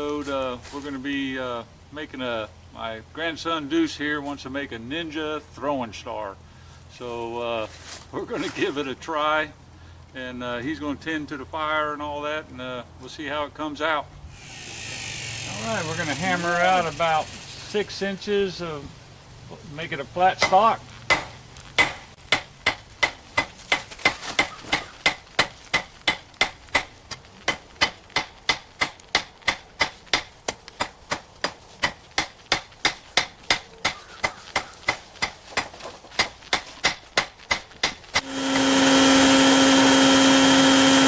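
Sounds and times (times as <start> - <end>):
electric blower whirring: 14.3 - 17.7, 38.2 - 41.0.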